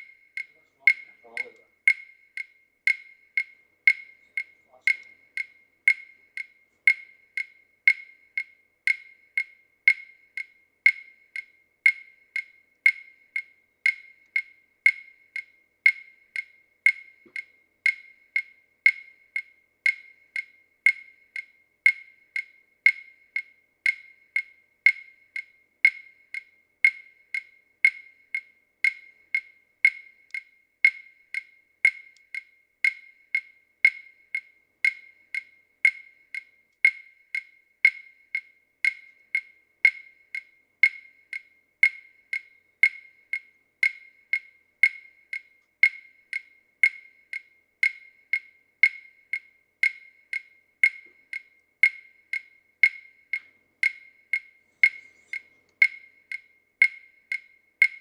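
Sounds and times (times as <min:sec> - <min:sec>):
steady high-pitched ticking: 0:00.0 - 0:58.0.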